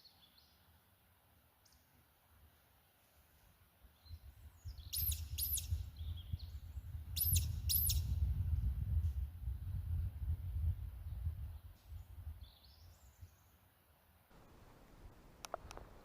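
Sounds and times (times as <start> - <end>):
bird whistling calls: 4.7 - 6.4, 7.2 - 8.1
low rumble on microphone: 5.6 - 13.3.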